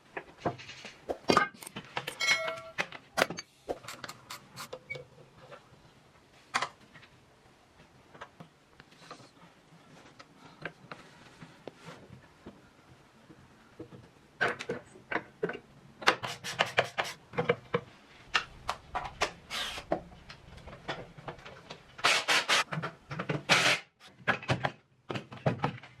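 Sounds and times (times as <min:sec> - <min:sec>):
objects knocking and clicking: 0:13.2 - 0:23.5, 0:24.1 - 0:26.0.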